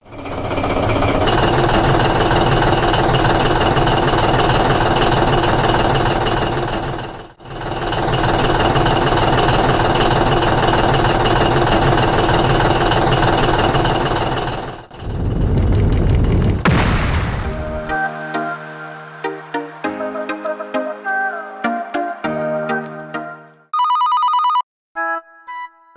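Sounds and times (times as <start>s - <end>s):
engine knocking idle: 0.0s - 16.6s.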